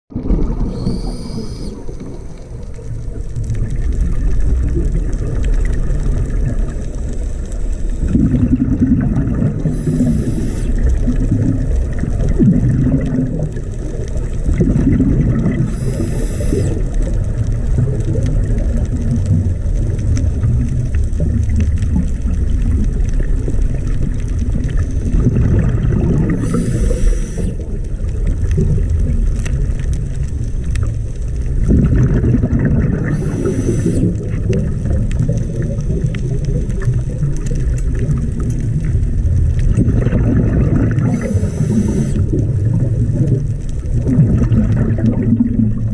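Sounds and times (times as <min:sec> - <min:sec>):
underwater rumble: 0:00.1 - 0:45.9
diver regulator breath hiss: 0:00.5 - 0:02.7, 0:06.9 - 0:08.6, 0:09.5 - 0:11.0, 0:15.5 - 0:17.0, 0:26.2 - 0:27.8, 0:33.0 - 0:34.5, 0:41.0 - 0:42.4.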